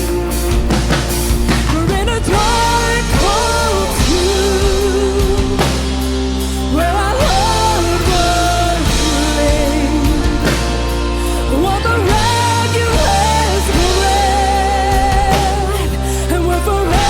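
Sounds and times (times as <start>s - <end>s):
band playing rock song: 0.0s - 17.0s
drum kit: 0.0s - 17.0s
low bass: 0.0s - 17.0s.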